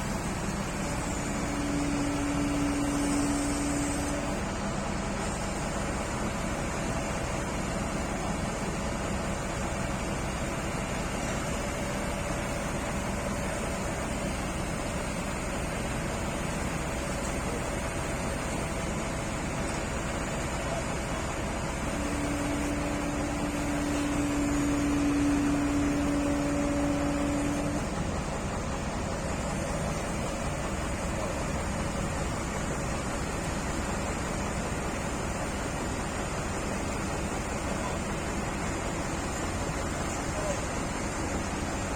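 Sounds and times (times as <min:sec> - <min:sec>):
steady whine: 0:00.0 - 0:06.0, 0:16.6 - 0:41.9
excavator diesel engine running: 0:00.0 - 0:41.9.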